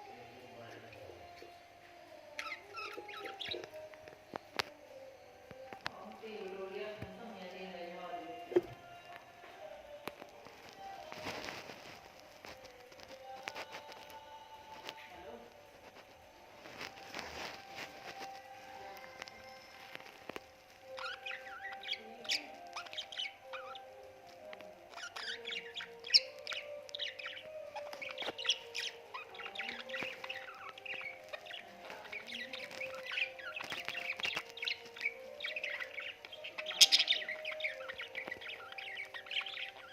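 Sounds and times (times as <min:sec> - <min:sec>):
budgerigars twittering: 0:02.3 - 0:03.9, 0:16.6 - 0:39.9.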